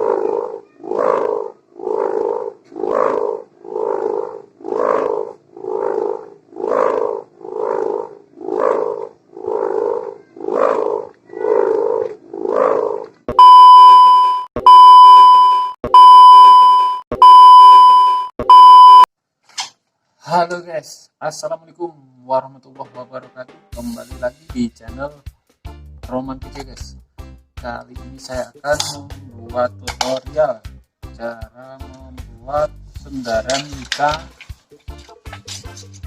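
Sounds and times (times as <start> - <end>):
electronic beeps: 13.3 - 19.1.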